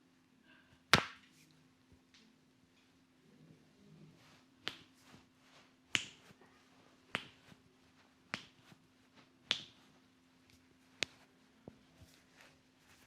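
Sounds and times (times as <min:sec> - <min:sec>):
faint low hum: 0:00.0 - 0:13.0
hands snapping: 0:00.9 - 0:01.3, 0:04.6 - 0:05.2, 0:05.9 - 0:06.4, 0:07.1 - 0:07.6, 0:08.3 - 0:08.8, 0:09.5 - 0:09.8.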